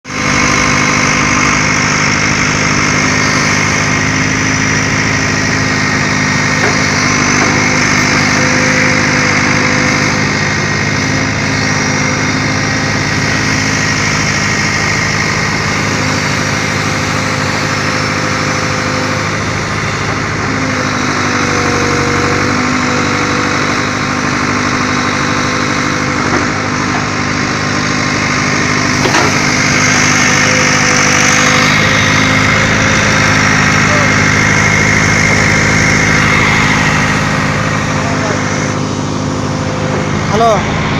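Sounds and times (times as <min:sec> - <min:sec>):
excavator diesel engine running: 0:00.0 - 0:40.9.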